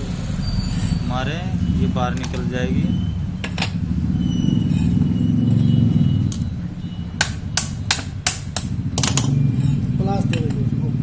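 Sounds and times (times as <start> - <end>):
hammer striking metal: 7.2 - 9.8.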